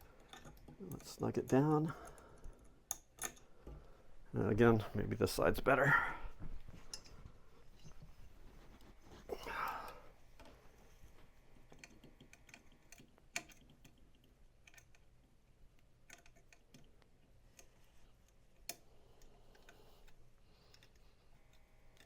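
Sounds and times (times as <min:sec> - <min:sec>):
allen key clicking on screws: 0:00.2 - 0:03.5, 0:11.6 - 0:22.0.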